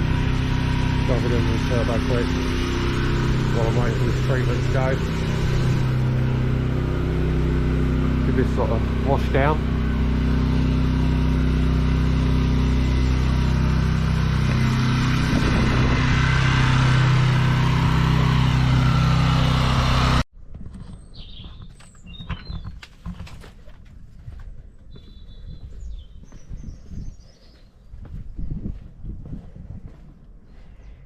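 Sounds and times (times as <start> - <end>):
birds chirping: 0.0 - 20.2, 20.9 - 23.3, 24.6 - 31.0
pressure washer engine running: 0.0 - 20.2.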